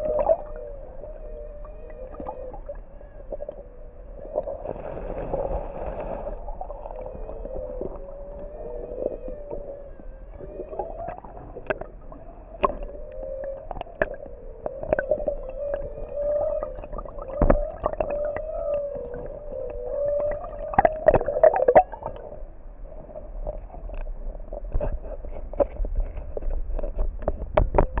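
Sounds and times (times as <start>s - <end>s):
underwater river hum: 0.0s - 28.0s.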